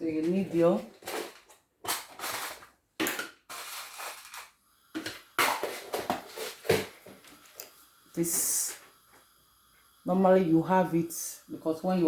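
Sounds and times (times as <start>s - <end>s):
small objects rustling and clattering: 0.0s - 7.7s.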